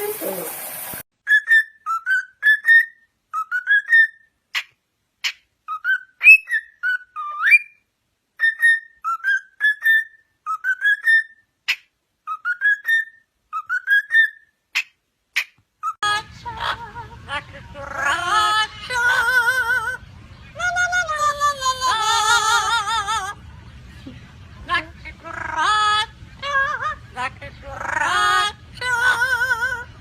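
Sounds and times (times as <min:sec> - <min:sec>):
parrot whistling a tune: 0:01.2 - 0:04.7, 0:05.3 - 0:07.8, 0:08.4 - 0:14.9.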